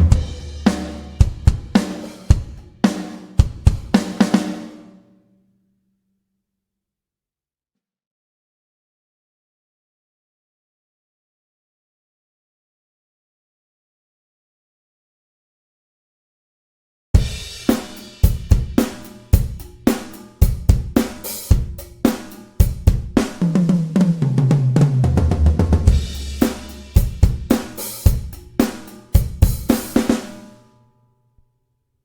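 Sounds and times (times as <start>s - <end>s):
kick drum: 0.0s - 0.5s, 1.2s - 2.6s, 3.4s - 3.9s
low drum fill: 0.0s - 4.9s, 17.2s - 30.4s
drum kit groove: 0.0s - 5.0s, 17.2s - 30.6s
snare drum: 0.0s - 5.0s, 17.2s - 30.6s
hi-hat: 17.4s - 22.9s, 25.9s - 30.3s.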